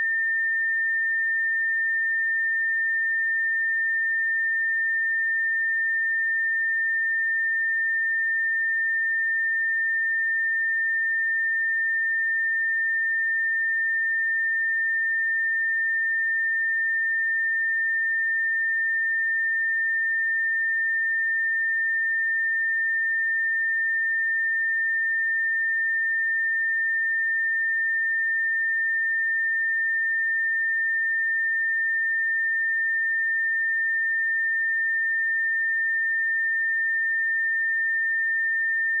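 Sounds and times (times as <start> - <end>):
high-pitched sine tone: 0.0 - 1.1, 9.7 - 39.0.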